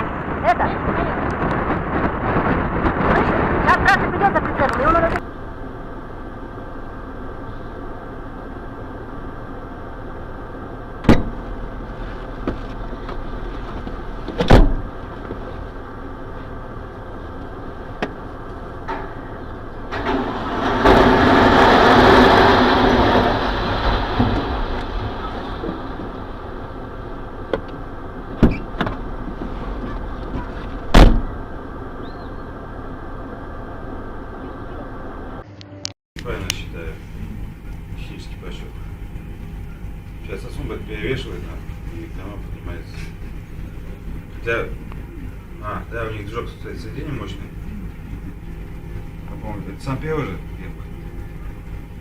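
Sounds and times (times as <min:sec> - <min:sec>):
heavy vehicle engine running: 0:00.0 - 0:52.0
loud rushing noise: 0:19.8 - 0:28.4.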